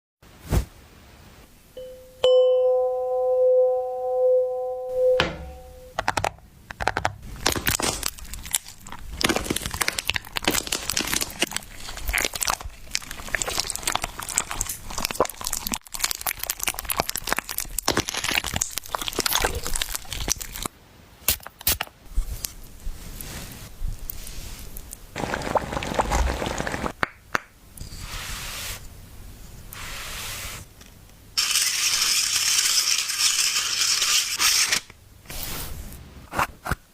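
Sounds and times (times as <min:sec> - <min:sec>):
steady pitched tone: 0:01.8 - 0:06.0
dense crackling and crunching: 0:07.2 - 0:20.7, 0:22.2 - 0:27.0.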